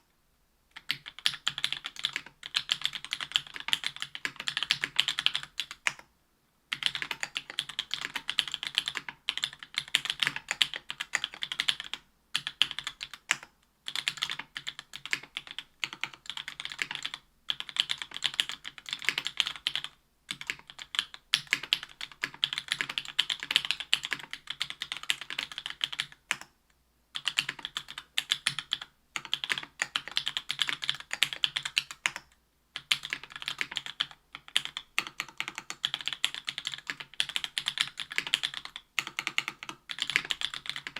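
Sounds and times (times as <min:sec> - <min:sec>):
mechanical keyboard typing: 0:00.8 - 0:06.1, 0:06.7 - 0:26.5, 0:27.2 - 0:40.9.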